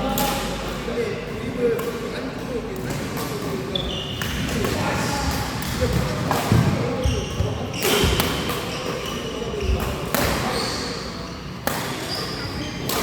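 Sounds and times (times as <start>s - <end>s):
shoes squeaking on floor: 3.7s - 4.5s, 6.1s - 13.0s.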